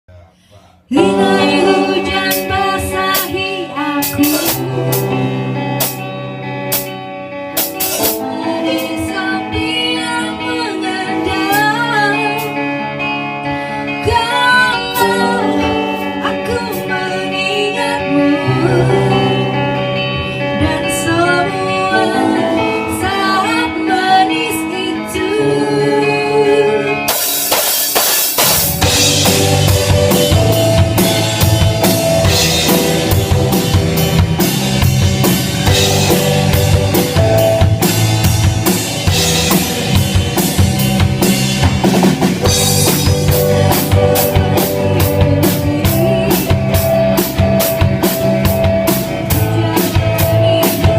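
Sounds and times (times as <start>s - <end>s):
person singing: 0.1s - 5.8s, 7.8s - 12.7s, 13.6s - 27.2s, 42.4s - 50.9s
guitar: 0.1s - 50.9s
drum kit with cymbals: 0.9s - 9.3s, 27.0s - 50.9s.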